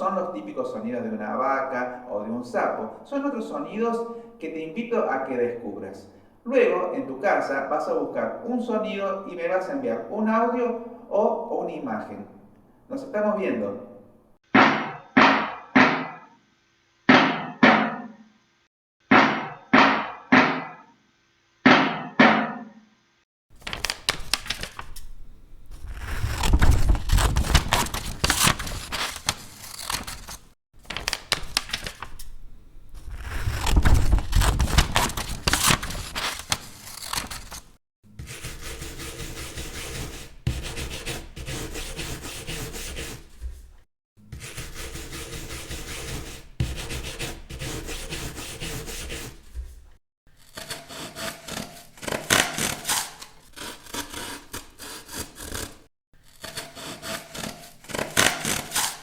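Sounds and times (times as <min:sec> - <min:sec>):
handsaw and plane scraping wood: 0:38.2 - 0:43.7, 0:44.3 - 0:59.0.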